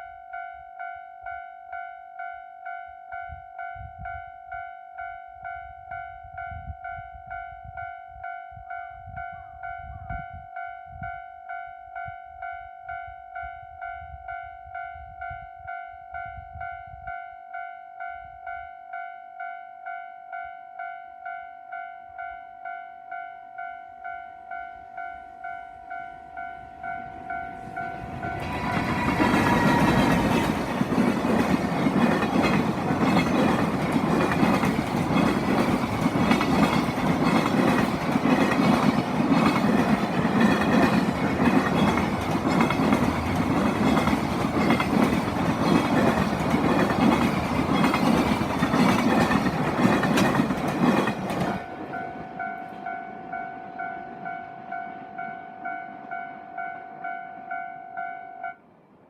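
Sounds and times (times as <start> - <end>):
level crossing warning bell: 0.0 - 58.6
freight train wheels clacking: 26.8 - 52.8.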